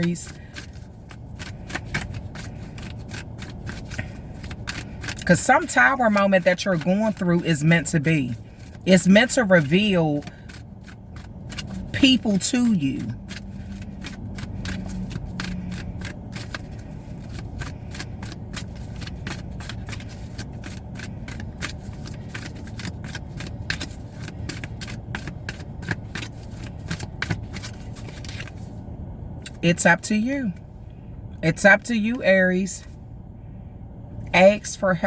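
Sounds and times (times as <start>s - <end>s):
cards being shuffled: 0.0s - 7.3s, 9.6s - 28.7s.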